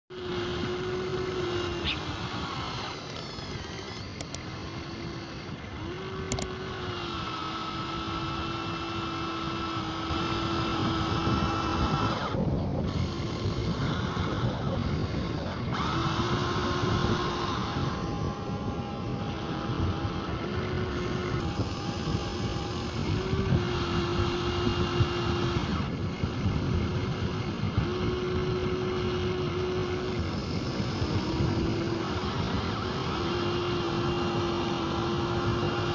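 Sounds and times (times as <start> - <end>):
electric motor whine: 0.1 - 35.9
mechanical rattle: 1.8 - 4.9, 6.2 - 6.6.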